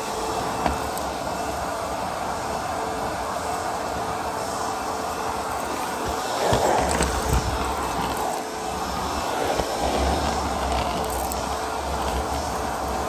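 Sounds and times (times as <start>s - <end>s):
vacuum tool rumbling on floor: 0.0s - 1.6s, 5.3s - 13.0s
vacuum cleaner running: 0.0s - 13.0s.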